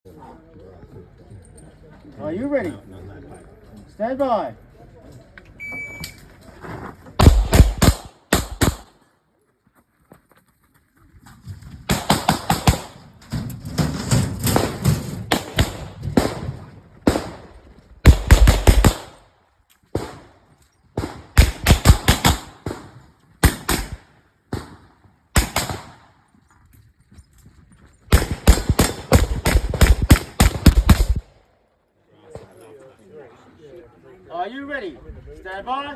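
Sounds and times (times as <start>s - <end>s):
pistol shots echoing: 7.2s - 9.0s, 11.9s - 13.0s, 14.6s - 19.3s, 20.0s - 20.4s, 21.0s - 26.1s, 28.1s - 31.3s.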